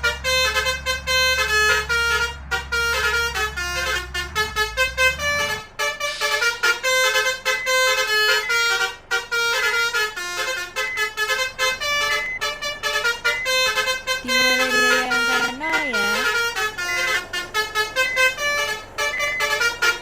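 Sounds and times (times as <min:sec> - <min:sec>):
low engine rumble: 0:00.0 - 0:20.0
musical bus horn melody: 0:00.0 - 0:20.0.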